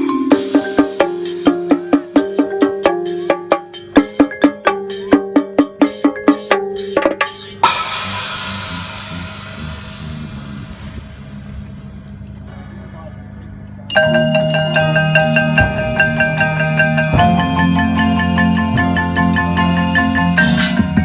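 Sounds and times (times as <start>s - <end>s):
ringing cymbal crash: 6.8s - 11.9s, 14.0s - 21.0s
held low note: 7.6s - 20.5s
wood block strikes: 14.0s - 21.0s.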